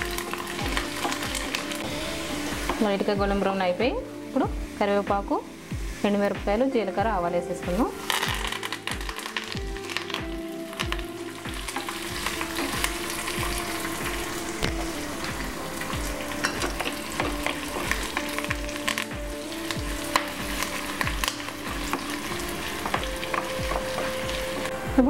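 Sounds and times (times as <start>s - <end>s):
spices sizzling in hot oil: 0.0s - 25.0s
sharp crackles and pops: 8.0s - 13.0s, 16.7s - 24.8s.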